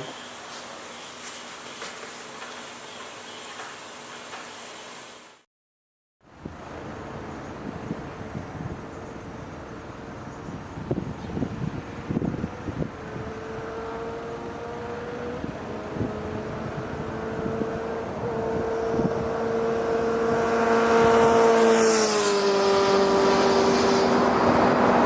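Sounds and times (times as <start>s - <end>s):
vehicle engine passing: 12.0s - 25.0s.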